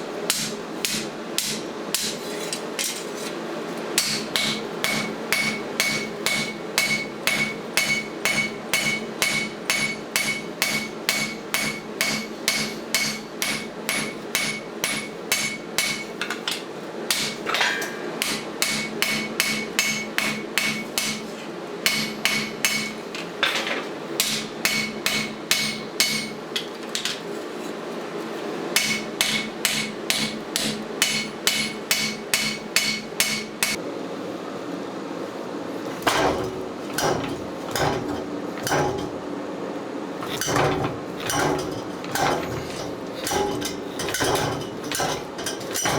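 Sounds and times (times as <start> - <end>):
hammer ringing on anvil: 4.0 - 16.1, 17.1 - 21.2, 21.9 - 23.0, 24.2 - 26.4, 28.8 - 33.8.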